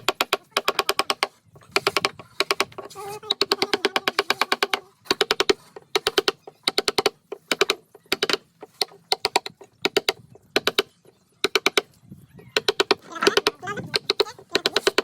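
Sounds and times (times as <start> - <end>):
rapid sharp tapping: 0.0 - 12.0, 12.6 - 15.0.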